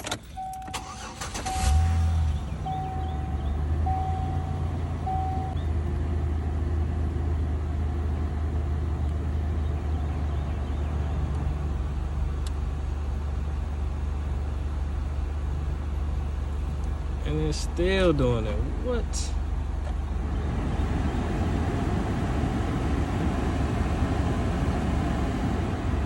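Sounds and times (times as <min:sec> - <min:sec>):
dashboard warning chimes: 0:00.0 - 0:05.7
car engine cranking and idling: 0:00.0 - 0:26.0.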